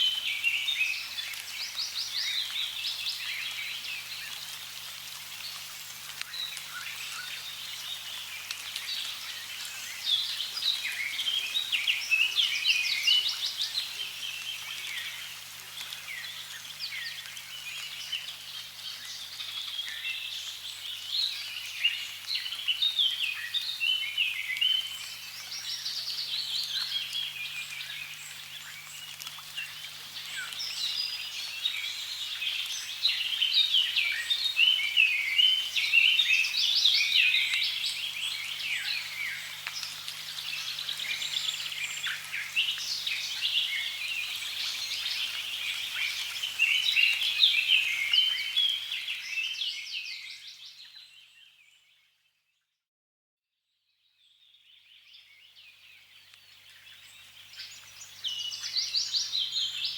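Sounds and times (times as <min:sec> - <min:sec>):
birds chirping: 0:24.6 - 0:49.6.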